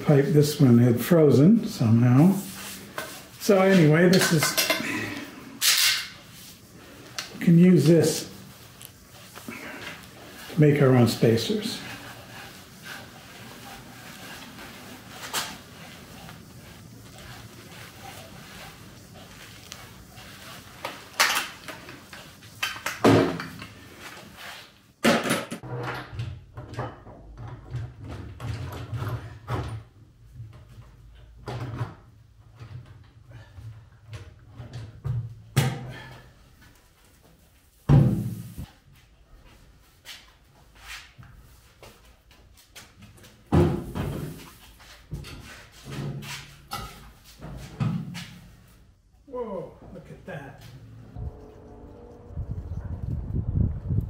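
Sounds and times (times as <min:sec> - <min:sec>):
low hum: 0:50.7 - 0:54.0.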